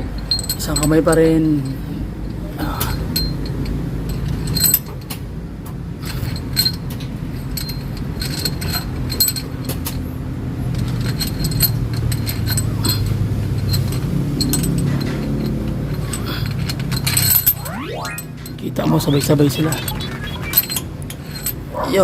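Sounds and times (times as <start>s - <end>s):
metal bolts and tools clinking: 10.7s - 18.2s.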